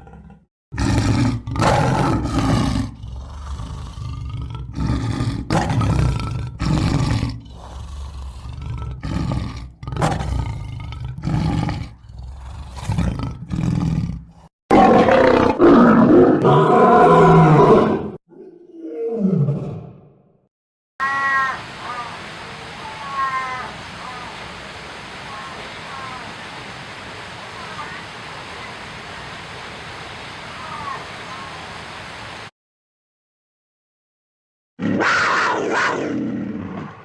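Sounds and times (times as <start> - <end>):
large animals roaring and growling: 0.0 - 20.2, 34.8 - 37.0.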